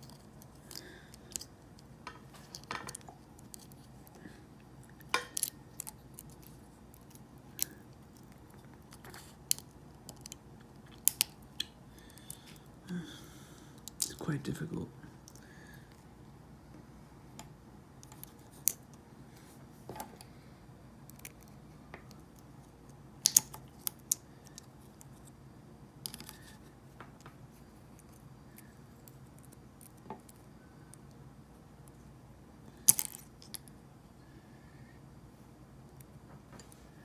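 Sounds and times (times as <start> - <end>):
small plastic parts clicking: 26.0 - 26.6.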